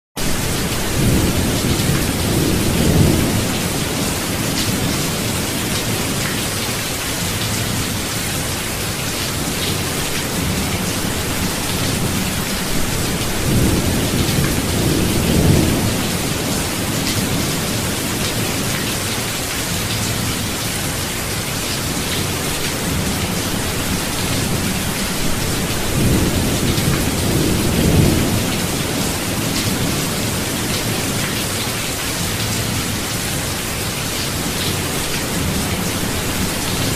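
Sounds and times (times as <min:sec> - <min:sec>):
thunder rumbling: 0:00.2 - 0:06.1, 0:09.4 - 0:18.9, 0:22.3 - 0:31.2
heavy rain: 0:00.2 - 0:36.9.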